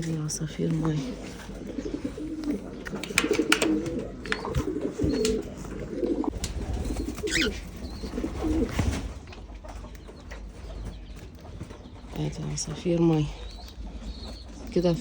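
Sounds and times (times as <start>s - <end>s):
pigeons cooing: 0.0s - 15.0s.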